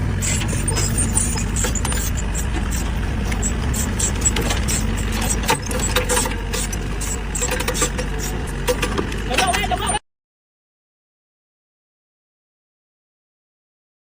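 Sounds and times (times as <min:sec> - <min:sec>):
engine rumbling: 0:00.0 - 0:10.0.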